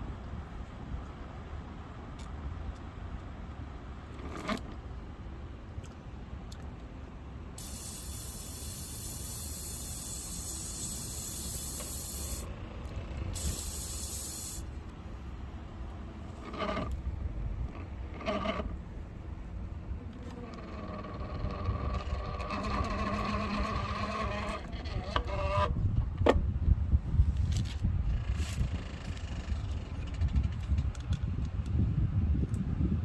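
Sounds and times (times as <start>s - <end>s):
steady low hum: 0.0s - 25.0s
aerosol can spraying: 7.6s - 12.5s, 13.4s - 14.7s.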